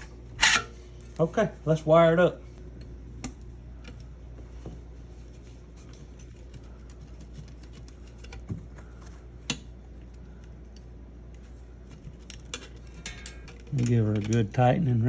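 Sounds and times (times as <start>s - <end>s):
steady low hum: 0.0s - 15.0s
clicks of handling wiring parts: 9.4s - 14.6s.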